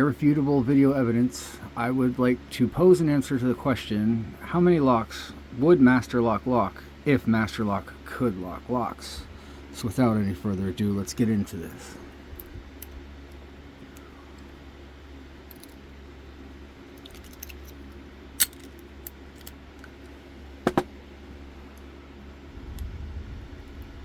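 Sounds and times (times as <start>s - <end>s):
steady low hum: 0.0s - 24.0s
lock picks ticking and scraping: 15.4s - 15.8s, 16.9s - 19.9s
padlock clicking: 18.4s - 19.6s.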